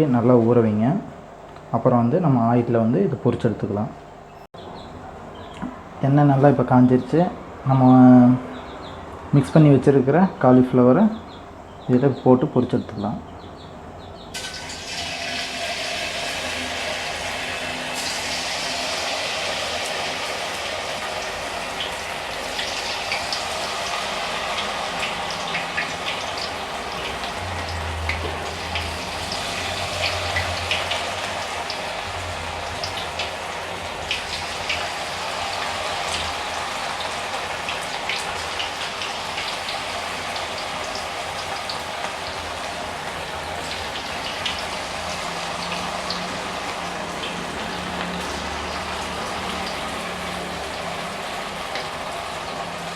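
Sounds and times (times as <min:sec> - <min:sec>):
cauliflower deep-frying in oil: 0:14.3 - 0:52.9.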